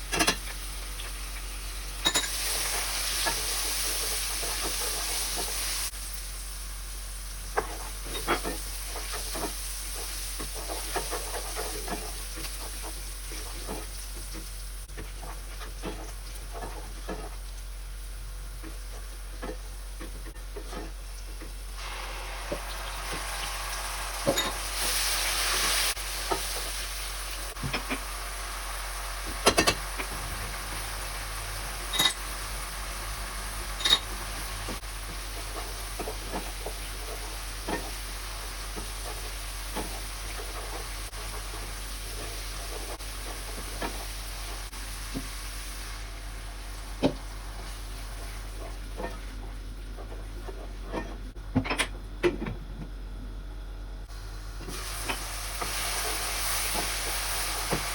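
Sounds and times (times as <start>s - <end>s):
food sizzling in a pan: 0.3s - 49.3s, 54.1s - 57.9s
spoon knocking a pan: 24.2s - 24.9s.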